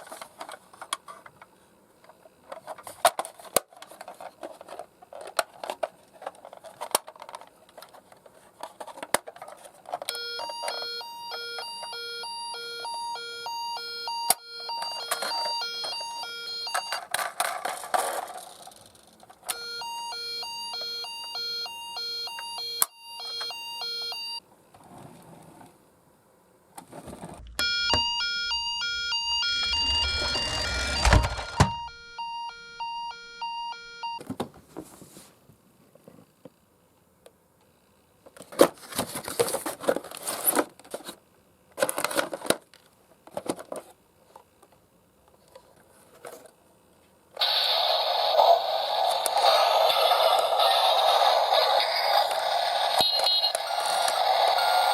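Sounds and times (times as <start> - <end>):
clicks and handling noise: 0.0 - 10.8
toy electronic two-tone siren: 10.1 - 17.0, 19.5 - 24.4, 27.6 - 34.2, 47.4 - 54.9.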